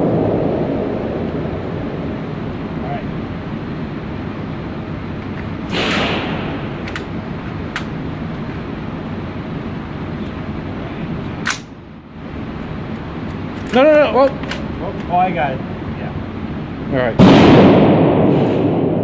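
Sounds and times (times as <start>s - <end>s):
background hiss: 0.0s - 17.2s
rifle shots: 5.7s - 7.2s, 17.2s - 19.0s.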